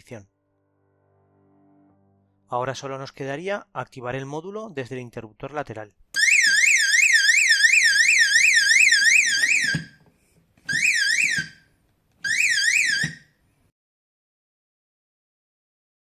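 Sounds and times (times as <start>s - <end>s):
warbling alarm siren: 6.2s - 10.0s, 10.7s - 11.6s, 12.2s - 13.2s.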